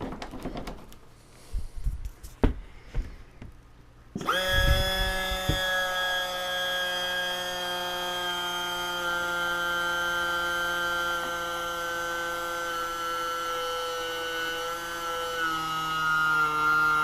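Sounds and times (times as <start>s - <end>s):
electric hydraulic pump whining: 4.2s - 17.0s.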